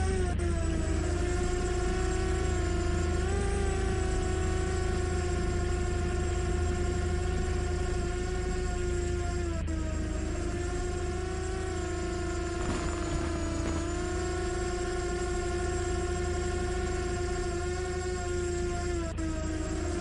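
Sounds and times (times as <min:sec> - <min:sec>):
drone propellers whining: 0:00.0 - 0:20.0
low rumble: 0:12.4 - 0:14.9.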